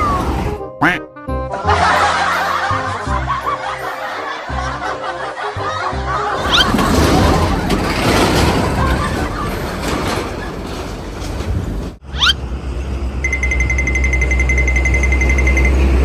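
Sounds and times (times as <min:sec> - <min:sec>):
large vehicle engine rumble: 0:00.0 - 0:00.6, 0:06.4 - 0:16.0
music playing: 0:00.0 - 0:06.5.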